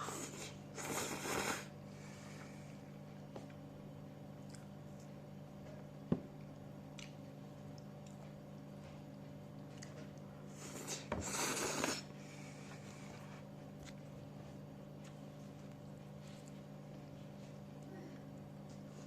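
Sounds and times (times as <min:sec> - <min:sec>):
steady low hum: 0:00.0 - 0:19.0.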